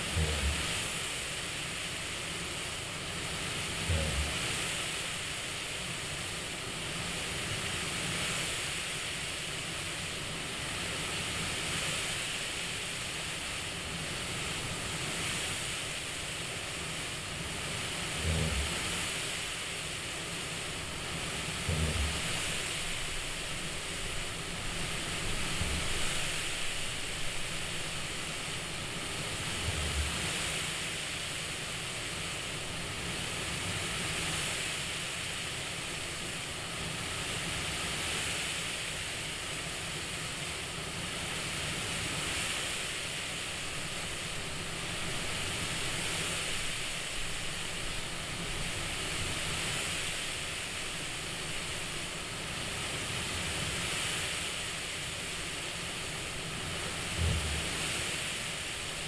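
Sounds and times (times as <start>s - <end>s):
breathing airflow hiss: 0.0s - 6.6s, 10.6s - 35.2s.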